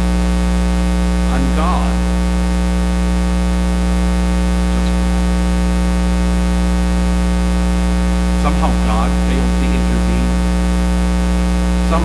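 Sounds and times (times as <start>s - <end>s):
electrical mains hum: 0.0s - 12.0s
recording hiss: 1.2s - 2.1s.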